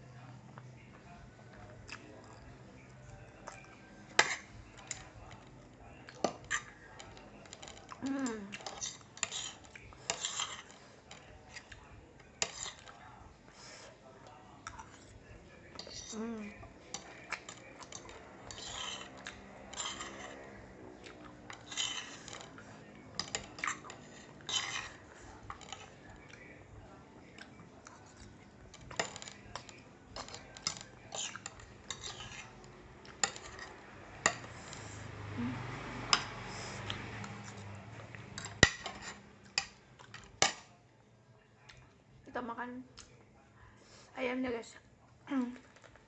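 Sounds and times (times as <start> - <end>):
eating sounds: 0.5 - 40.3
cutlery clicking against a bowl: 4.2 - 5.4, 8.5 - 13.0, 16.9 - 20.5, 21.1 - 25.9, 28.7 - 34.8, 36.1 - 40.7.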